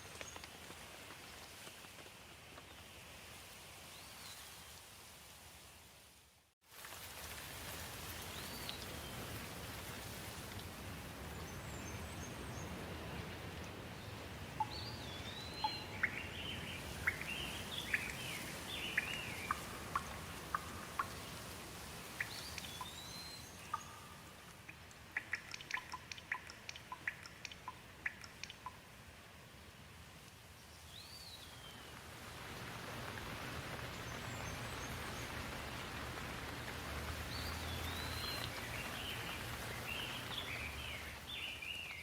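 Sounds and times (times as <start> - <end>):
steady rain: 0.0 - 42.0
water drips: 6.8 - 29.2, 30.2 - 42.0
birds chirping: 14.6 - 21.3, 25.2 - 28.8, 37.3 - 42.0.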